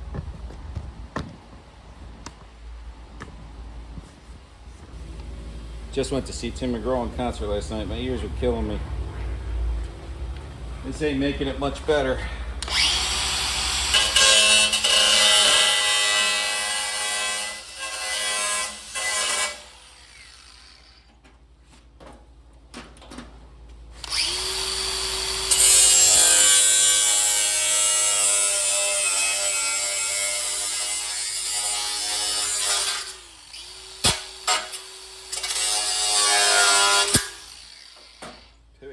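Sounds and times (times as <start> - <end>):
angle grinder whining: 12.6 - 16.2, 24.0 - 38.6.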